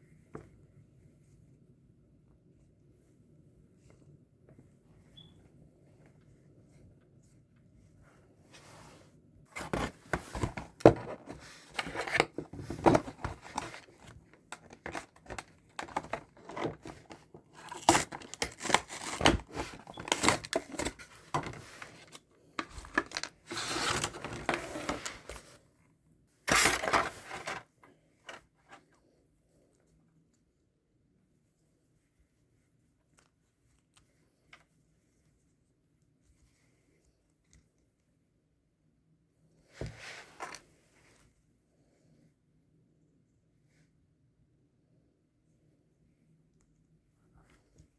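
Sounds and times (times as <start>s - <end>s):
packaging rustling and crackling: 9.5s - 25.6s, 26.5s - 27.7s.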